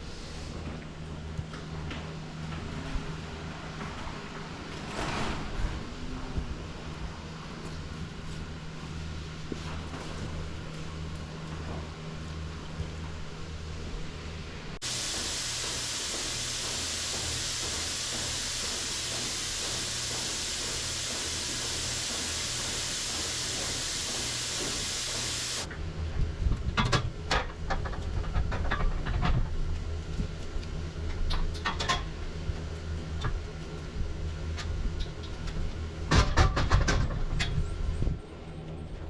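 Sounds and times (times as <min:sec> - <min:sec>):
low machine hum: 0:05.5 - 0:26.6
steady hiss: 0:14.8 - 0:25.7.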